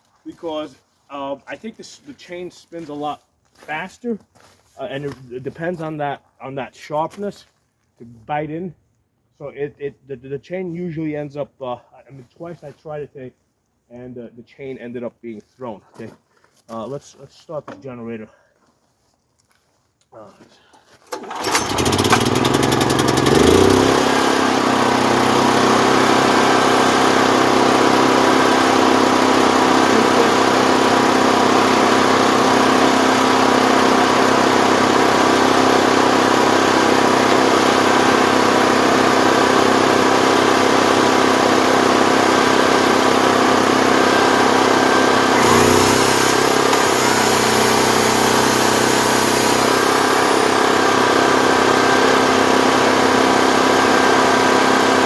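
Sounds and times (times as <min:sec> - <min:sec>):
generator engine running: 0:21.1 - 0:55.0.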